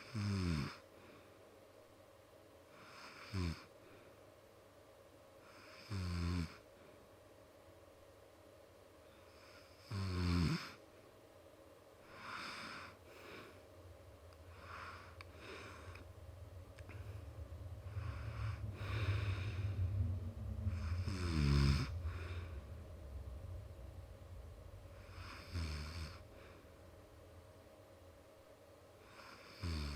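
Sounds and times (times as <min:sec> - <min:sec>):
man snoring: 0:00.0 - 0:00.8, 0:02.8 - 0:03.7, 0:05.6 - 0:06.6, 0:09.4 - 0:10.8, 0:20.7 - 0:22.4, 0:25.0 - 0:26.2, 0:29.1 - 0:29.9
soft breaths: 0:00.8 - 0:01.8, 0:11.9 - 0:29.9
low rumble: 0:13.1 - 0:28.8.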